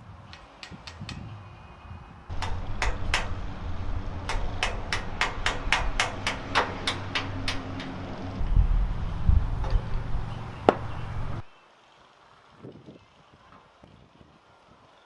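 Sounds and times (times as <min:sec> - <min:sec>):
hammer striking steel pin: 0:02.3 - 0:08.5.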